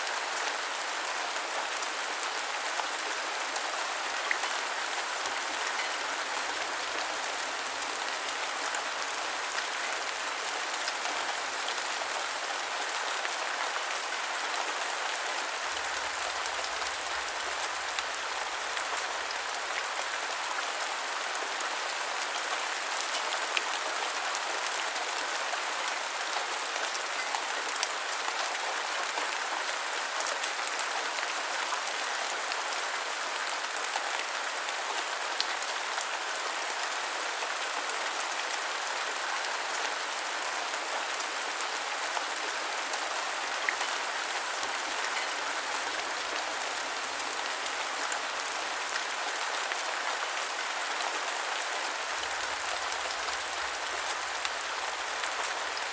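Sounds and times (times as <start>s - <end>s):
rain pattering: 0.1s - 29.5s, 41.1s - 55.9s.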